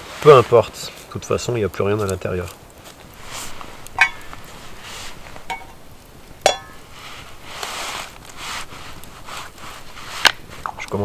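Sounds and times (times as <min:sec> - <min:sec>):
cookware clinking: 0:04.0 - 0:04.4, 0:05.5 - 0:05.8, 0:06.4 - 0:06.8.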